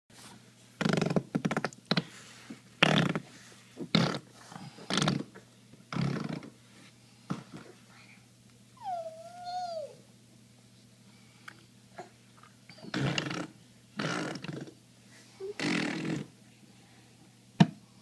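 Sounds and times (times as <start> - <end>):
baby blowing raspberries: 12.8 - 14.7, 15.5 - 16.3.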